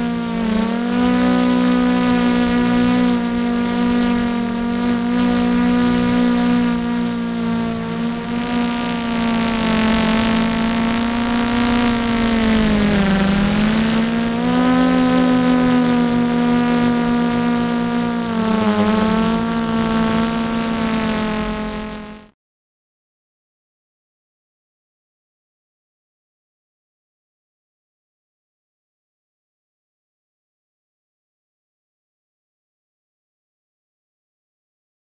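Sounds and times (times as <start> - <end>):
drone motors buzzing: 0.0 - 22.3.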